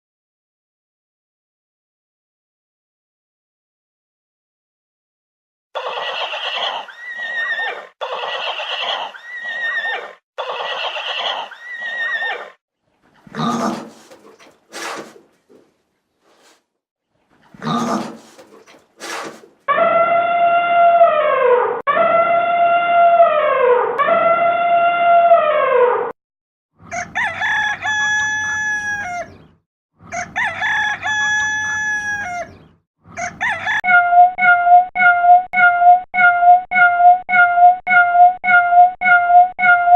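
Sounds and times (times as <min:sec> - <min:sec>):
horse neighing: 0:05.8 - 0:12.6, 0:13.2 - 0:15.2, 0:17.5 - 0:19.5
short animal sound: 0:17.5 - 0:19.9
rooster crowing: 0:26.9 - 0:29.4, 0:30.1 - 0:32.6, 0:33.2 - 0:33.8.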